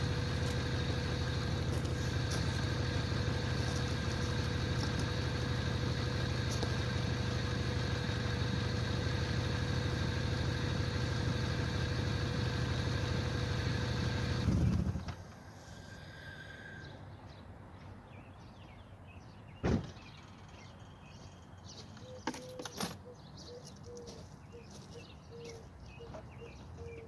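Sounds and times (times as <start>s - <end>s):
car engine idling: 0.0s - 15.2s.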